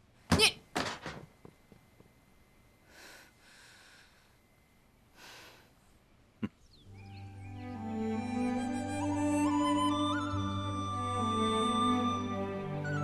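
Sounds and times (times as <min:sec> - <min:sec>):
person breathing: 0:02.8 - 0:04.4, 0:05.1 - 0:05.8.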